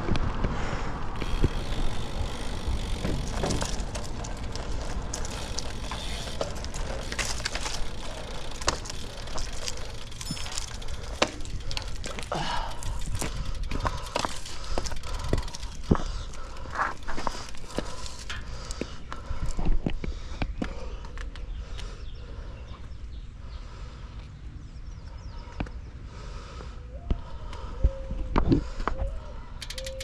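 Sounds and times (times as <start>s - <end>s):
bicycle clicks and rattles: 0.0s - 22.0s, 28.4s - 30.0s.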